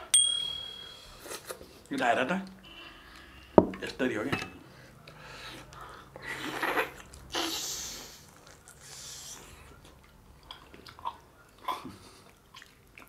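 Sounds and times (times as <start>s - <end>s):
person chewing food: 5.5s - 7.4s, 8.0s - 13.0s
breathy hissing noises: 7.3s - 9.7s.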